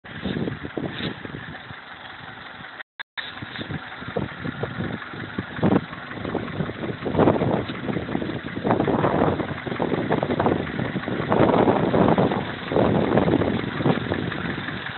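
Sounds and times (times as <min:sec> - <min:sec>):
car engine idling: 0:00.0 - 0:14.9
dull engine knocks: 0:03.6 - 0:14.9.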